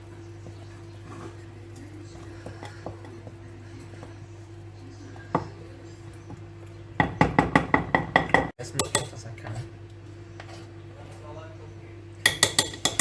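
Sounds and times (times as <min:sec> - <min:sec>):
steady low hum: 0:00.0 - 0:13.0
spoon knocking on bowl: 0:12.2 - 0:13.0.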